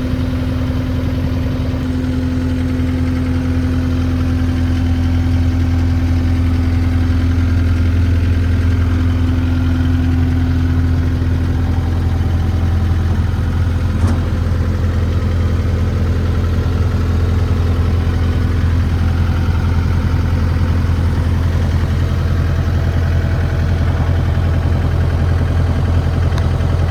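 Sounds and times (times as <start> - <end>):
diesel loader engine running: 0.0 - 26.9
short click: 14.0 - 14.5.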